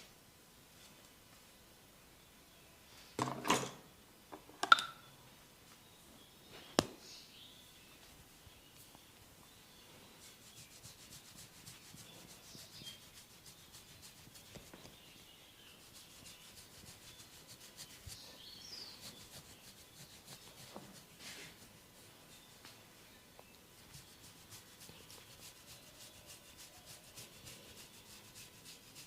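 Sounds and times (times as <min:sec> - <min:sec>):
rubbing and scratching on hair: 0:09.7 - 0:22.8, 0:23.8 - 0:29.0.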